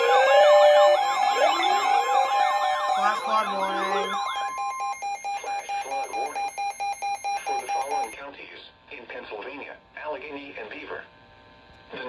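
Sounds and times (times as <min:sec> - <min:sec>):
pulsing alert tone: 0:00.0 - 0:08.1
sirens wailing: 0:00.0 - 0:08.2
steady alert tone: 0:00.0 - 0:08.2.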